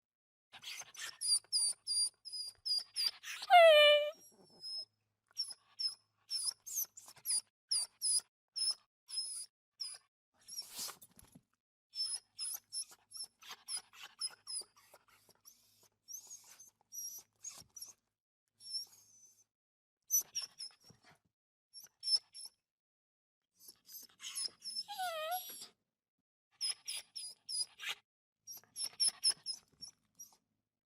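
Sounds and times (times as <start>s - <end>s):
dog whimpering and whining: 0.6s - 10.9s, 12.0s - 18.0s, 18.6s - 19.5s, 20.1s - 21.2s, 21.8s - 22.6s, 23.6s - 25.8s, 26.6s - 30.4s
dog whining: 2.7s - 4.8s, 23.6s - 25.7s
dog whimpering: 3.0s - 4.8s, 23.9s - 25.7s.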